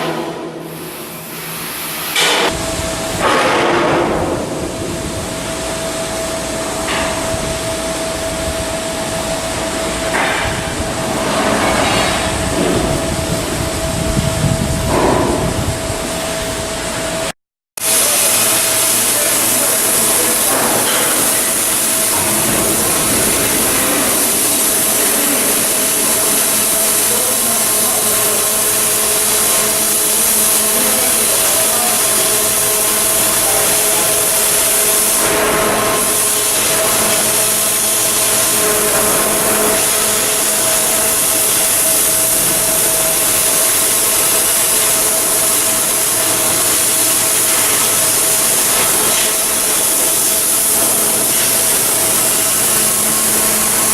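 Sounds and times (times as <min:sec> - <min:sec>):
arc welding hissing: 0:17.8 - 0:53.9.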